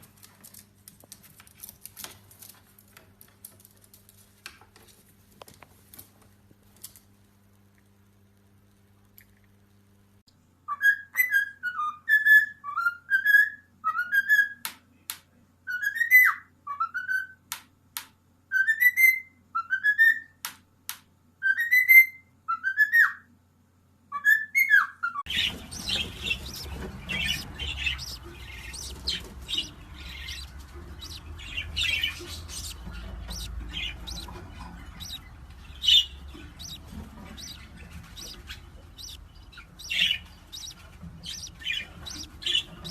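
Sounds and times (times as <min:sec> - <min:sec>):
parrot chirps and squawks: 0:24.1 - 0:42.9.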